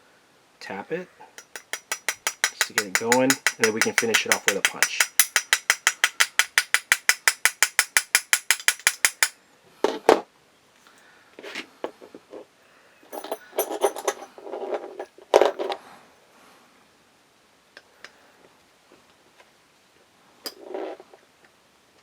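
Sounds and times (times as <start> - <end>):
rapid light hammer taps: 1.4 - 9.4
tools and parts clinking: 1.4 - 9.4, 13.1 - 15.8.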